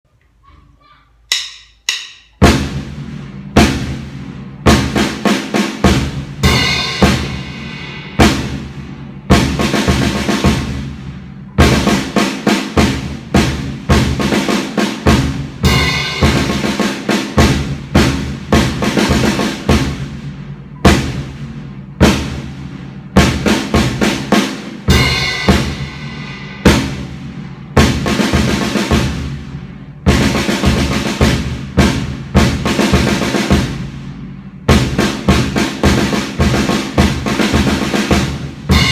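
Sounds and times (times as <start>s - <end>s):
snare and bass drum strikes: 1.3s - 38.9s
cymbal crashes: 5.8s - 11.2s, 15.1s - 17.7s, 24.9s - 28.0s, 38.7s - 38.9s.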